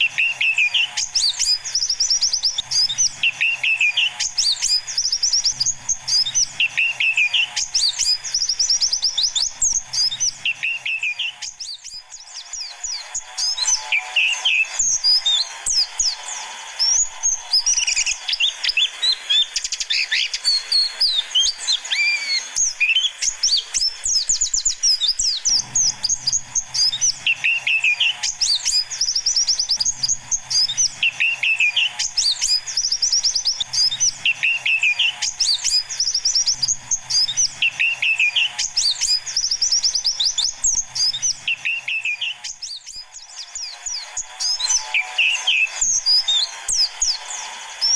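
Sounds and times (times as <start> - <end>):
birds chirping and twittering: 0.0 - 47.9
lower bird call: 0.0 - 47.9.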